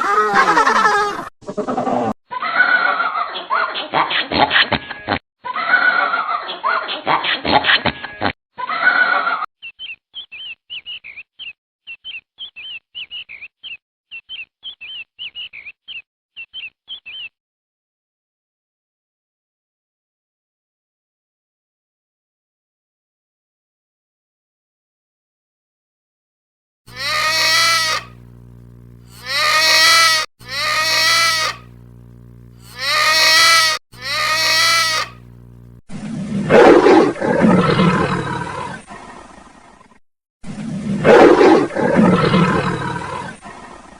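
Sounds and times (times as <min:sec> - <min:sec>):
small bird chirping: 0:09.6 - 0:17.4, 0:26.9 - 0:31.8, 0:32.6 - 0:35.7
loud animal call: 0:26.9 - 0:28.3, 0:29.1 - 0:31.8, 0:32.6 - 0:35.3.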